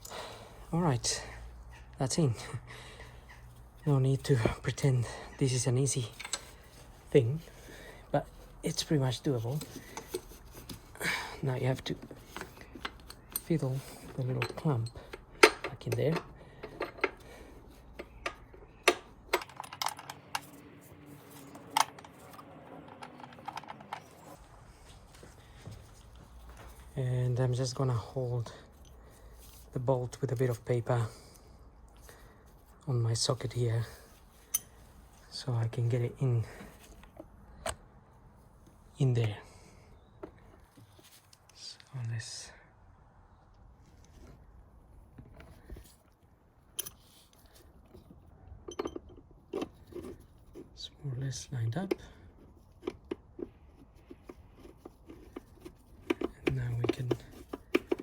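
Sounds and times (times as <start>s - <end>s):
metal clamp clicking and knocking: 5.9s - 6.8s, 11.7s - 20.6s, 21.4s - 24.3s, 48.6s - 50.2s, 54.2s - 58.0s.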